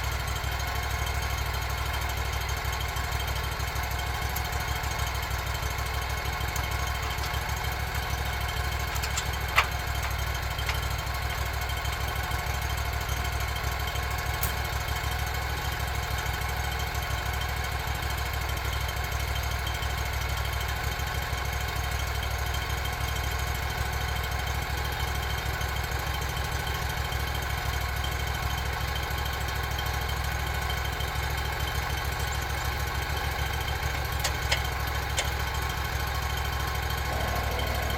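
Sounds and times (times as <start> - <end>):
sawmill engine running: 0.0 - 18.6, 25.8 - 37.9.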